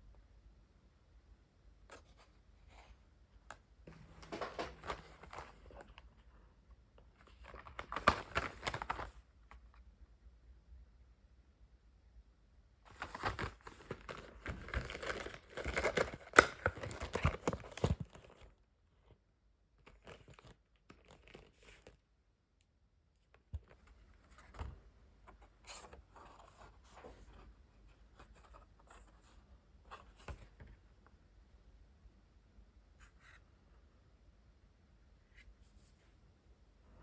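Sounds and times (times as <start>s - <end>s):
packaging crinkling and rustling: 3.9s - 6.0s, 7.2s - 9.2s, 12.9s - 18.5s, 19.9s - 22.0s.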